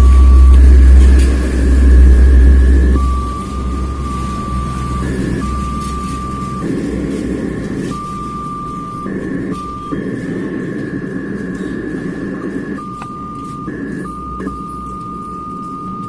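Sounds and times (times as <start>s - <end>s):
speaker electronic whistle: 0.0s - 10.0s
rough low hum: 0.0s - 16.0s.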